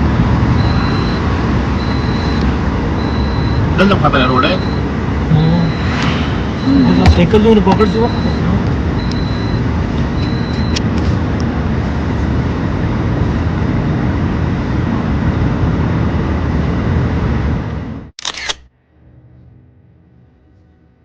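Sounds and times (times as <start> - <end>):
car road noise: 0.0 - 18.1.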